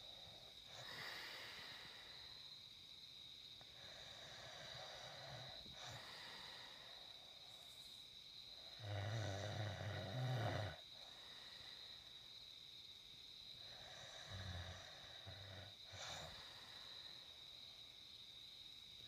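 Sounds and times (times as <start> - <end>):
man snoring: 3.8 - 6.8, 8.7 - 11.6, 13.6 - 16.6.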